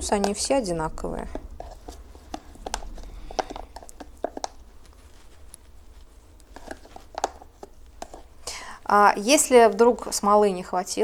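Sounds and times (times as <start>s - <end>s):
steady low hum: 0.0s - 10.6s
small objects clicking and tapping: 1.2s - 5.7s, 6.4s - 8.5s.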